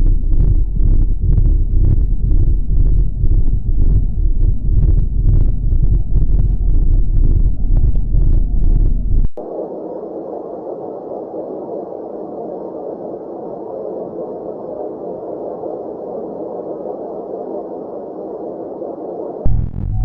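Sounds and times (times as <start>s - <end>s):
rumbling noise drone: 0.0s - 20.0s
electronic music with heavy beat: 19.5s - 20.0s.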